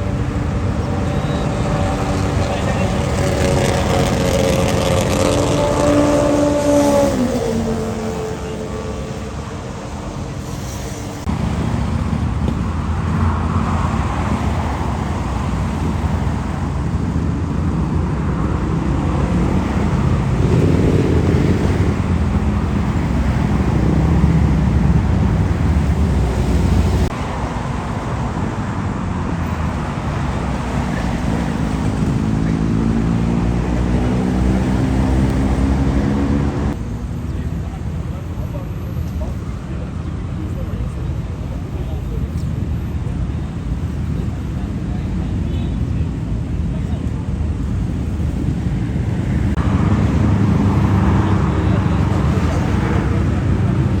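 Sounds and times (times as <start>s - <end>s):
motorcycle engine revving: 0.0s - 9.3s, 18.5s - 27.1s, 30.9s - 36.8s
motorcycle engines running: 0.0s - 10.0s, 11.2s - 27.1s, 28.8s - 54.0s
road traffic noise: 0.0s - 54.0s.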